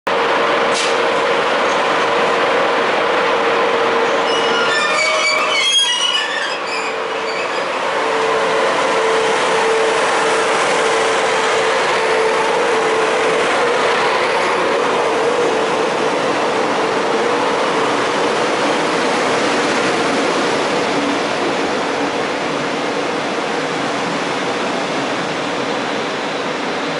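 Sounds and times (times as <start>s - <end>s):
train running: 0.1s - 26.9s
brakes and wheels squealing: 4.1s - 7.8s.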